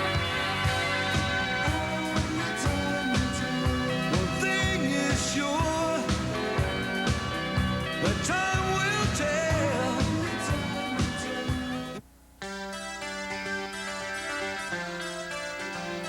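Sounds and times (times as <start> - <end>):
steady drum beat: 0.0 - 11.8
pop-rock song: 0.0 - 12.0.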